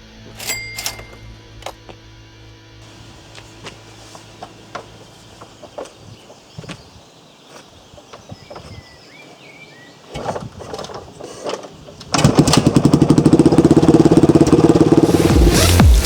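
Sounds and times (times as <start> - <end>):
dirt bike engine running: 2.8 - 6.6, 12.2 - 16.0
birds chirping faintly: 2.8 - 12.1.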